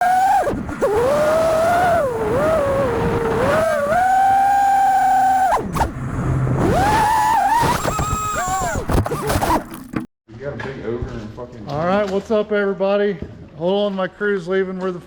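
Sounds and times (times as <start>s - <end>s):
quadcopter motors whining: 0.0s - 9.7s.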